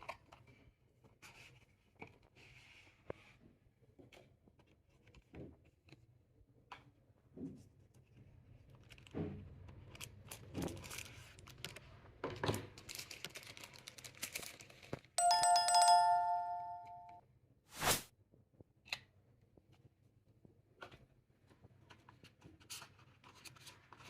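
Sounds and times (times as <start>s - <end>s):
two-tone electronic chime: 15.2s - 17.2s.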